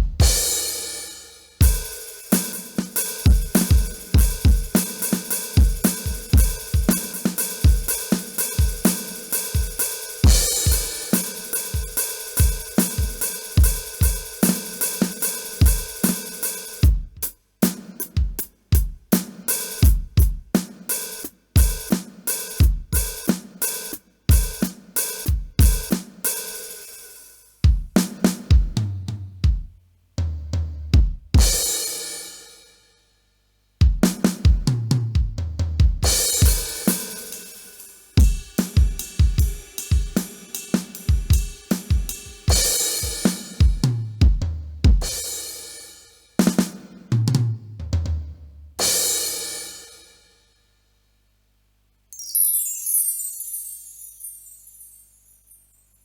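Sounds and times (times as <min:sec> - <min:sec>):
electronic drum beat: 0:00.0 - 0:00.9, 0:01.6 - 0:20.8, 0:24.3 - 0:26.1, 0:27.7 - 0:31.6, 0:33.8 - 0:37.6, 0:38.2 - 0:45.2.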